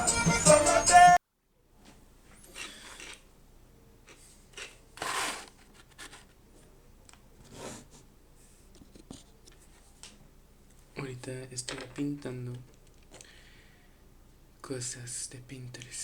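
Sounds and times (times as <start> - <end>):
rustling of objects: 4.1 - 13.4.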